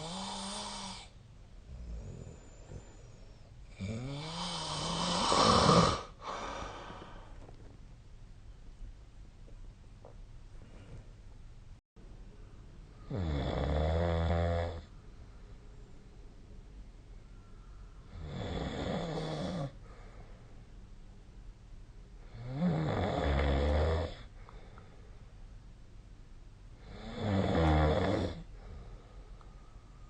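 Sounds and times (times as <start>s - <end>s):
person snoring: 0.0s - 1.1s, 3.7s - 7.3s.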